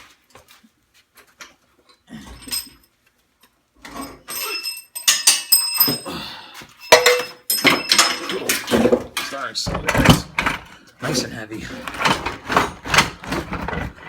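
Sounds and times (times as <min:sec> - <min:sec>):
metal clanking and scraping: 0:03.8 - 0:06.1, 0:06.7 - 0:14.0
sharp clanks with metallic ringing: 0:04.0 - 0:06.1, 0:06.8 - 0:10.2.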